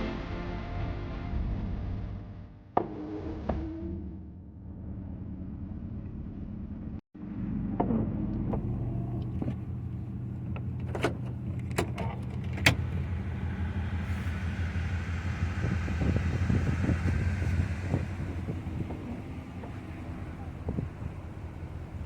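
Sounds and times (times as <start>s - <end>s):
van engine running: 4.4s - 22.0s.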